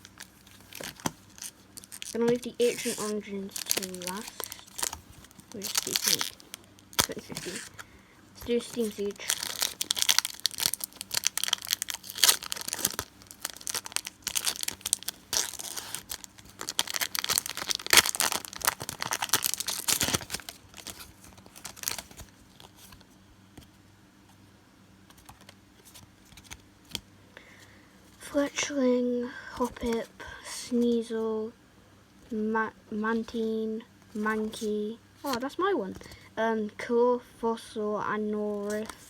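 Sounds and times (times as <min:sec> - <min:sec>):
foil wrapper tearing and crinkling: 0:00.0 - 0:07.8, 0:08.5 - 0:23.0.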